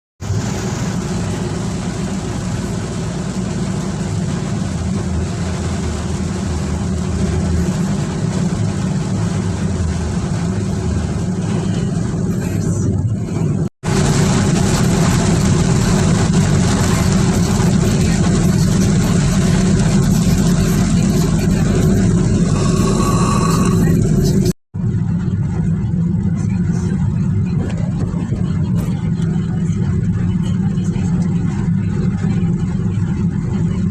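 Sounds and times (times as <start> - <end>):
heavy rain falling: 0.2 - 24.5.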